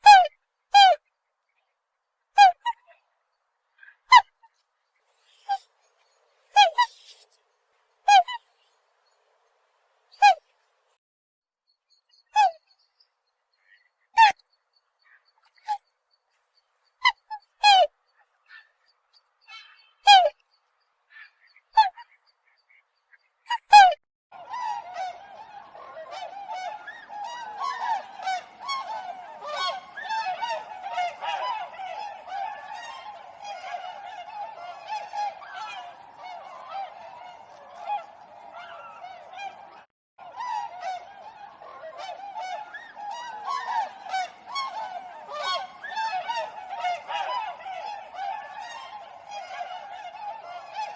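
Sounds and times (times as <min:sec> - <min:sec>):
swans calling: 0:03.8 - 0:07.3, 0:08.1 - 0:08.8, 0:13.6 - 0:14.4, 0:17.0 - 0:18.9, 0:19.5 - 0:20.4, 0:23.5 - 0:50.9.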